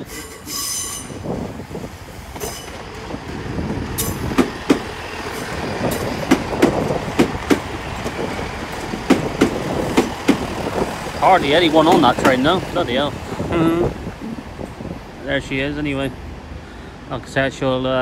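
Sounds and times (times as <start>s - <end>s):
train wheel squeal: 0.0s - 1.2s
train rumbling: 0.0s - 18.0s
wheels clicking over rail joints: 2.2s - 14.9s.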